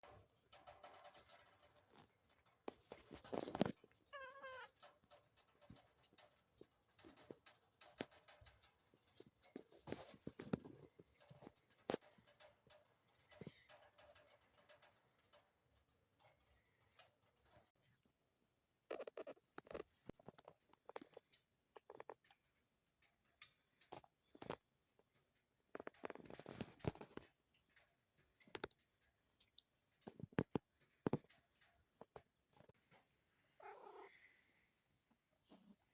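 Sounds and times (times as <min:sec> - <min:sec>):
faint rustles and clicks: 0:00.0 - 0:35.9.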